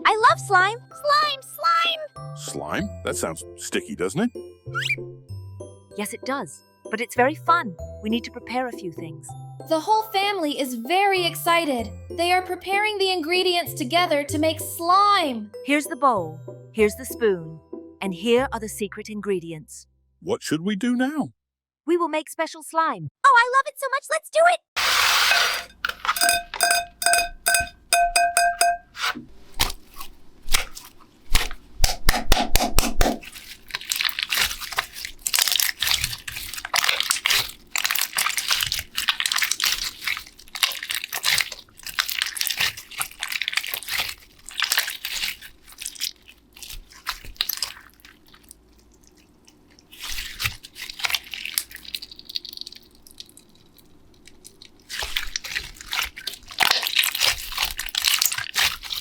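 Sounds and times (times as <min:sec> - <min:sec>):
slime crinkling and crunching: 0:29.6 - 0:31.7, 0:33.2 - 0:59.0.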